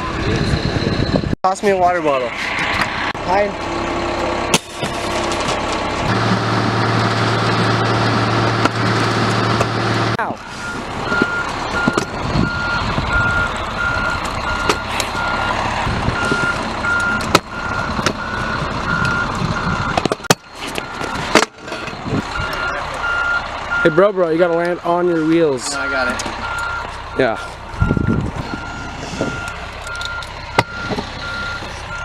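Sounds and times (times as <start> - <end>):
reversing alarm beeping: 0.0 - 1.4, 10.2 - 15.6, 16.2 - 24.3, 25.0 - 32.0
vehicle engine running: 1.9 - 32.0.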